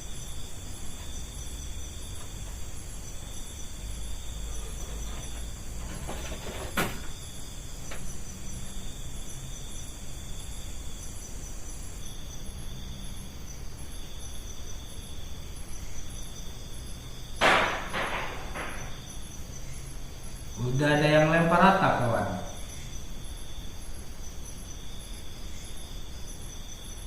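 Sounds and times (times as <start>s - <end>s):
night insects chirping: 0.0s - 27.0s
knocks clattering on roof: 4.5s - 7.2s, 17.4s - 19.0s.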